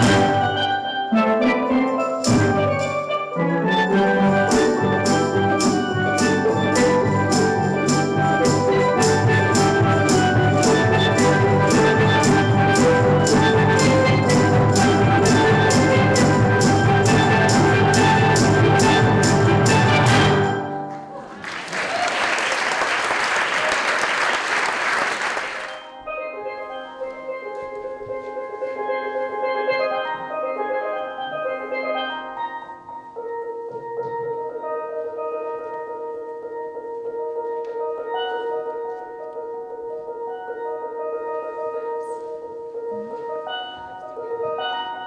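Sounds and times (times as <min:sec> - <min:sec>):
steel drum band playing: 0:00.0 - 0:21.0
steel pan notes: 0:00.0 - 0:21.0
audience applauding: 0:19.7 - 0:25.9.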